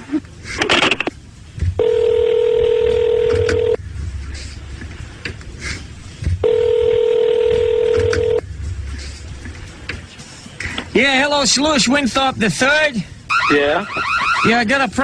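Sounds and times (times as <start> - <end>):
telephone ringback tone: 1.8 - 3.8, 6.4 - 8.4.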